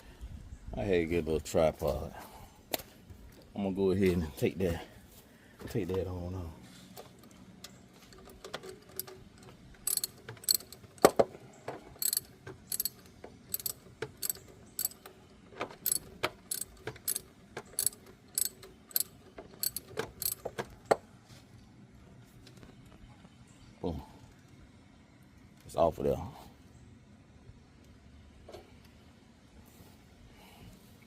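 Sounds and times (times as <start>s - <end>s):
ratchet wrench clicking: 9.8s - 11.2s, 12.0s - 15.1s, 15.8s - 20.5s.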